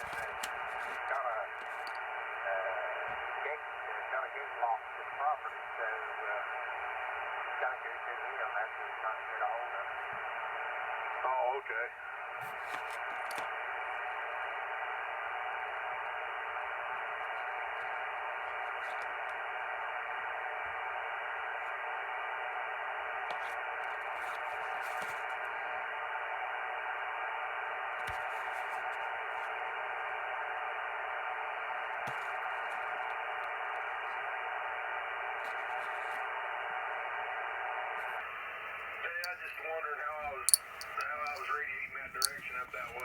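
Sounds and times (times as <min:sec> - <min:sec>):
radio static hiss: 0:00.0 - 0:10.4, 0:41.0 - 0:43.0.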